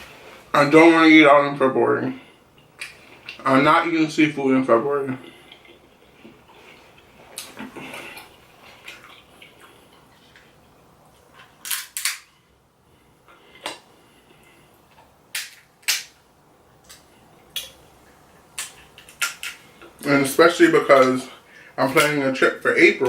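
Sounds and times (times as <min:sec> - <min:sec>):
seafood shells cracking: 0:11.6 - 0:12.3, 0:15.3 - 0:16.2, 0:18.6 - 0:19.6.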